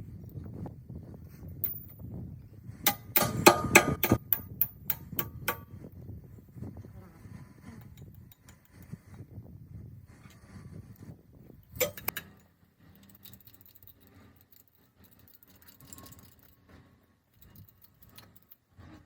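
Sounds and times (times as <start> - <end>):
low workshop background: 0.0 - 19.0
hammer striking steel: 2.8 - 5.7, 11.8 - 12.3.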